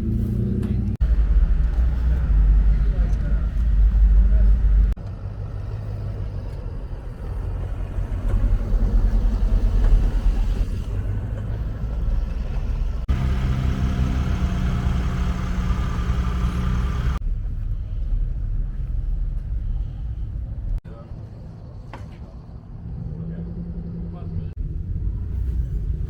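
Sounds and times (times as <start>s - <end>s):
vehicle engines rumbling: 0.0s - 26.0s.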